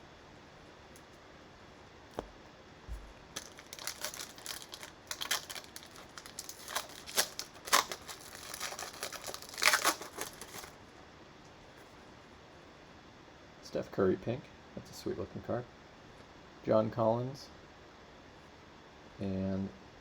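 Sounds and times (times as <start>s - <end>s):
cellophane wrapper tearing and crinkling: 2.9s - 10.8s.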